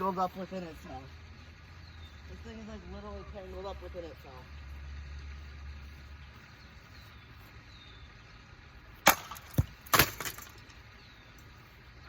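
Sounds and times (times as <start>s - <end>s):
metal clatter: 9.1s - 10.8s.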